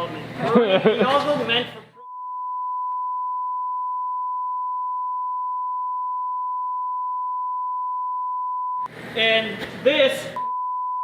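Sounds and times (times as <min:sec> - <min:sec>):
censor bleep tone: 0:02.0 - 0:08.9, 0:10.4 - 0:11.0
speech: 0:09.2 - 0:10.4.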